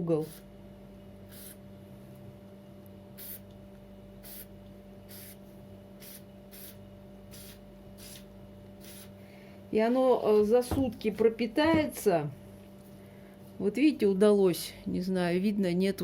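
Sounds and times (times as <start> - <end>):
faint hum: 0.0 - 16.0
aerosol spray hiss: 1.3 - 1.6, 3.2 - 3.4, 4.2 - 4.5, 5.1 - 5.4, 6.0 - 8.2, 8.8 - 9.1.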